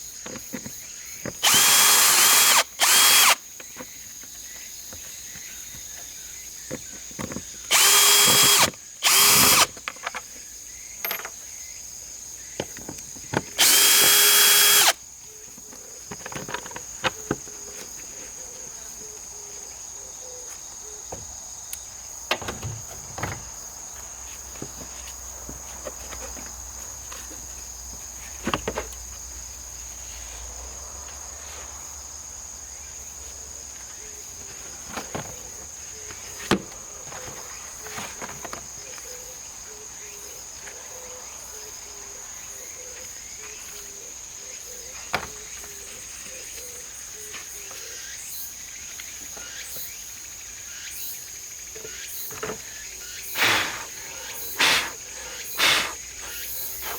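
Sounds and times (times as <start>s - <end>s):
cicadas buzzing: 0.0s - 56.9s
cordless drill spinning: 1.4s - 3.4s, 7.7s - 9.8s, 13.5s - 15.0s, 53.3s - 56.9s.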